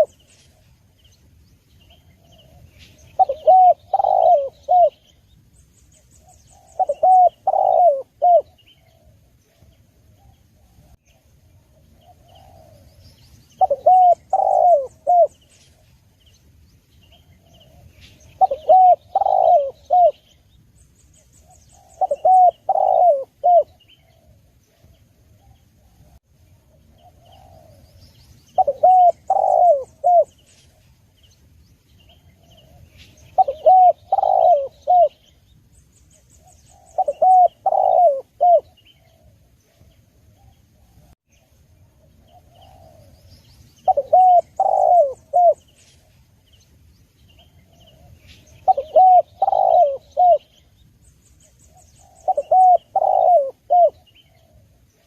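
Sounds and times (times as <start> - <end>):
dove cooing: 0.0 - 0.7, 1.9 - 5.2, 6.2 - 11.0, 11.6 - 15.4, 17.1 - 20.4, 21.4 - 30.4, 32.1 - 35.4, 36.4 - 41.1, 42.0 - 46.2, 47.4 - 50.7, 51.5 - 55.0
small birds chirping: 0.0 - 55.0.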